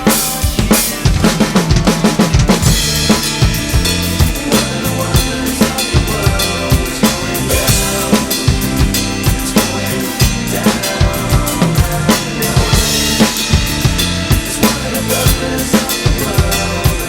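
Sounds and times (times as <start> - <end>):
drum kit rock groove: 0.0 - 17.0
rock backing track: 0.0 - 17.0.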